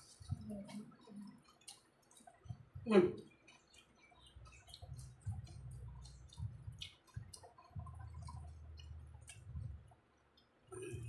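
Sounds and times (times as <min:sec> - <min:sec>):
wet chewing squishes: 0:00.0 - 0:11.0.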